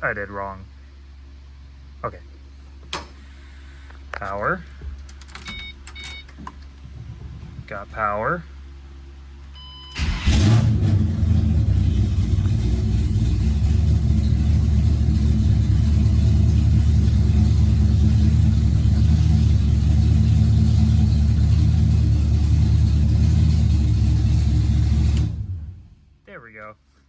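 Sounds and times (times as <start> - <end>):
car engine idling: 10.0 - 26.2.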